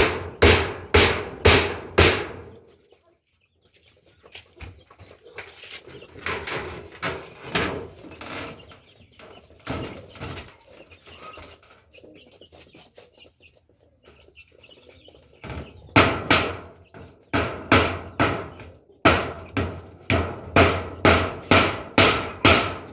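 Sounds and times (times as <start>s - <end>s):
loud sharp knocks: 0.0s - 2.5s, 15.9s - 22.9s
chickens clucking: 0.0s - 22.9s.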